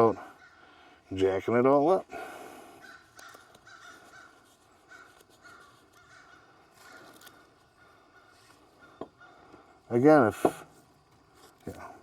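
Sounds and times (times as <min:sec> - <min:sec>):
faint harsh bird calls: 0:00.0 - 0:01.3, 0:02.1 - 0:10.0.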